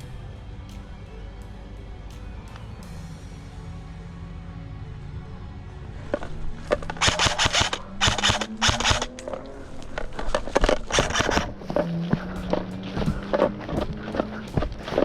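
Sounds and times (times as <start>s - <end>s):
faint music: 0.0s - 15.0s
rustling through brush: 6.0s - 15.0s
scattered clicks: 6.1s - 15.0s.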